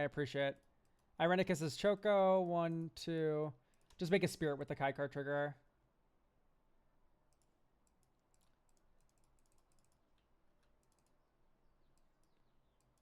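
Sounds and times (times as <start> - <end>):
computer clicks: 0.6 - 1.2, 3.7 - 4.1, 7.3 - 11.2, 11.8 - 13.0.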